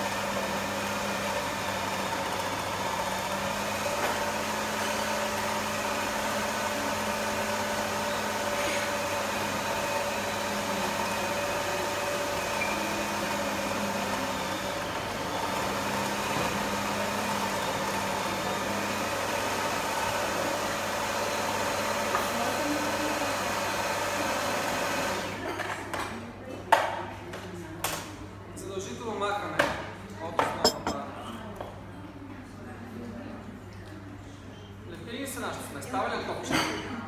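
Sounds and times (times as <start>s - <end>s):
food processor motor humming: 0.0s - 22.2s.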